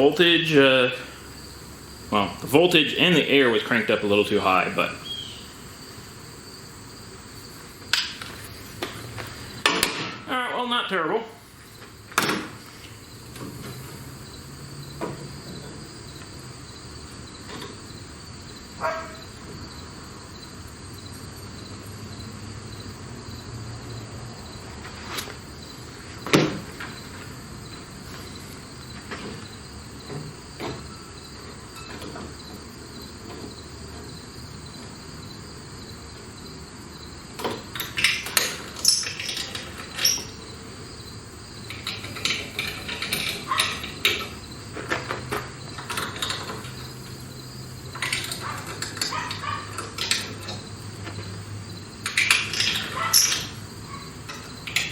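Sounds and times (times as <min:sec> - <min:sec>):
crickets chirping: 0:00.0 - 0:54.9
sharp knocks and clanks: 0:07.6 - 0:10.4, 0:11.8 - 0:16.3, 0:26.2 - 0:35.0, 0:37.4 - 0:54.9.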